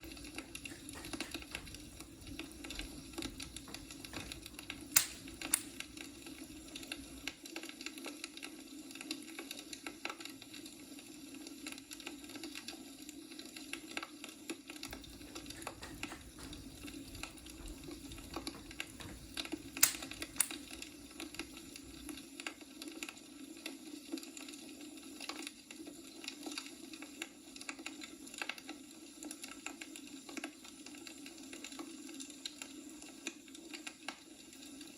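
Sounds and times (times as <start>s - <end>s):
logs crackling in fire: 0.0s - 34.9s
sharp fire pops: 0.1s - 7.3s, 14.9s - 22.2s.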